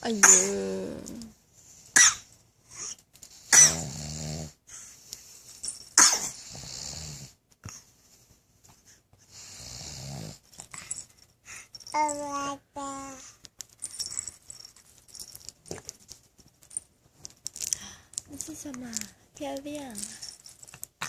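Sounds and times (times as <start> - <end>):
man snoring loudly: 3.7 - 4.6, 6.5 - 7.3, 9.5 - 10.4.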